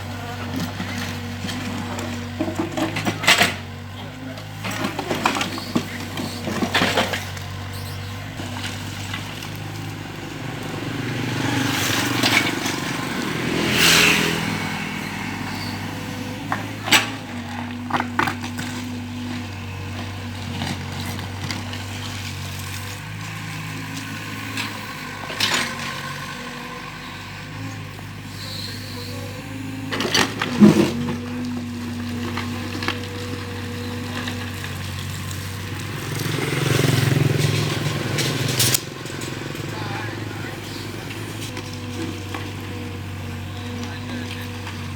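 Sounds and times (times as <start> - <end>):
diesel engine running: 0.0 - 44.9
knocks and scrapes on ground: 4.4 - 10.1, 29.9 - 42.9.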